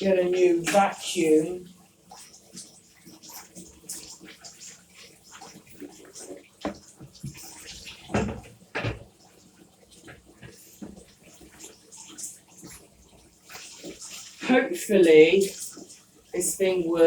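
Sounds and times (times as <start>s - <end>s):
shower water splashing in bathtub: 0.0s - 17.0s
plastic parts knocking on tub: 8.1s - 9.2s.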